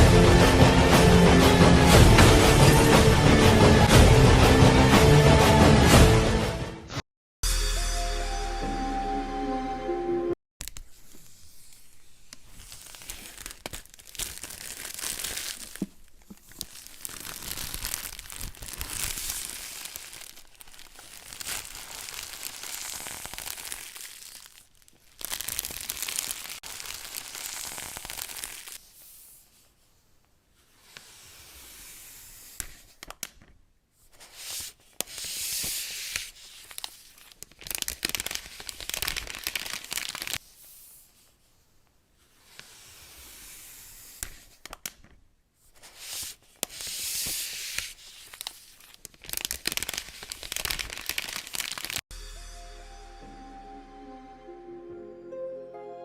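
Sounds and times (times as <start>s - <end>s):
packaging tearing and crinkling: 12.3s - 28.8s, 35.0s - 40.4s, 46.1s - 52.0s.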